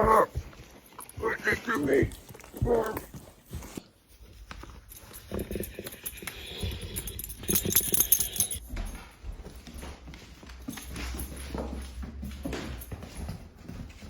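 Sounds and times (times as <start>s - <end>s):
dog paws tapping and scuffling: 0.0s - 14.0s
light jingling: 4.6s - 9.6s, 10.6s - 13.5s.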